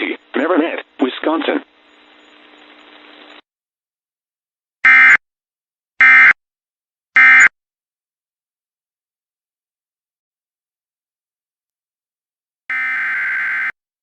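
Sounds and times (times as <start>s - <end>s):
buzzy digital data bursts: 12.7s - 13.7s.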